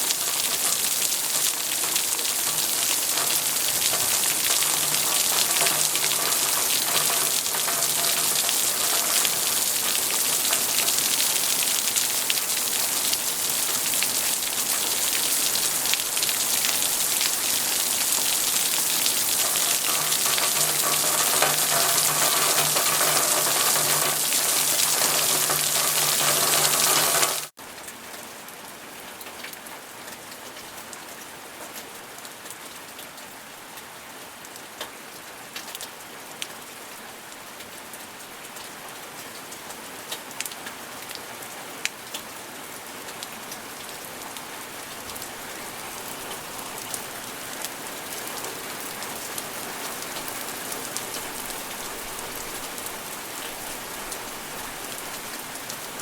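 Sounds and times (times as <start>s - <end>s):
loud rush of water: 0.0s - 27.6s
steady gentle rain: 0.0s - 56.0s.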